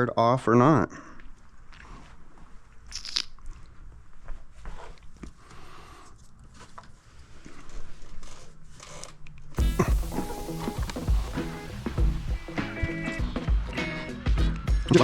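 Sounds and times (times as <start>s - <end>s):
background music: 9.6s - 15.0s.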